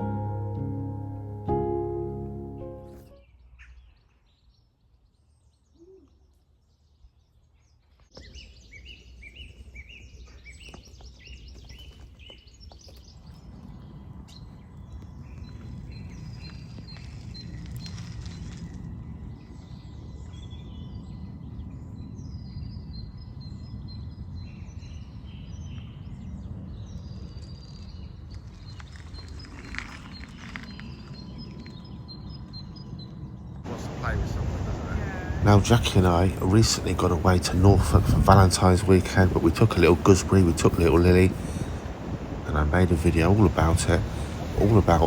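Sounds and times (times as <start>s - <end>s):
small birds chirping: 3.1s - 18.8s, 19.4s - 45.0s
low rumbling noise: 31.2s - 45.0s.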